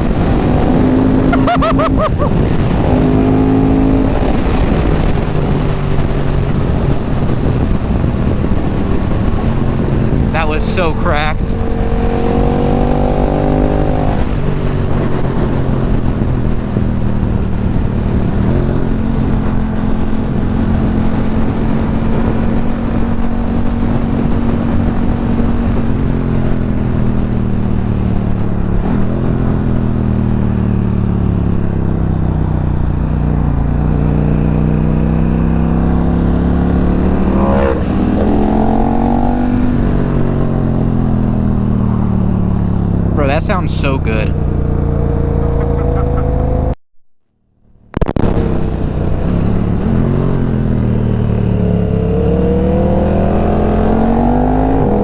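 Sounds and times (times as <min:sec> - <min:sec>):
wind rush: 0:00.0 - 0:27.4, 0:33.1 - 0:43.2.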